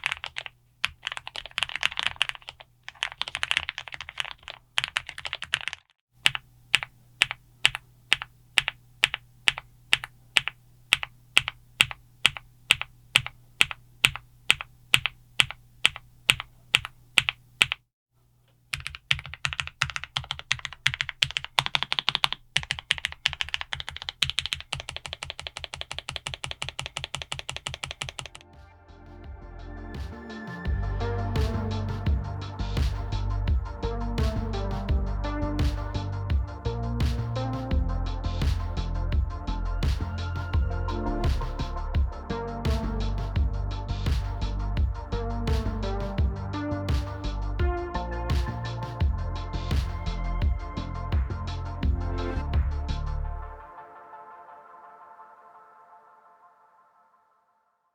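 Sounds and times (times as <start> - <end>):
typing on mechanical keyboard: 0.0 - 17.8, 18.7 - 28.4
music: 28.4 - 57.9.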